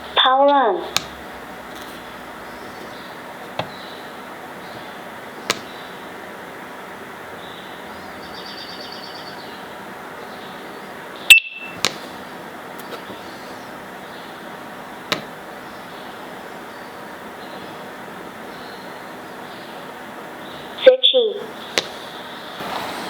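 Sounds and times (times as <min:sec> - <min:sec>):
rapid chirping tone: 0:07.4 - 0:12.2
short high beep: 0:11.3 - 0:11.8.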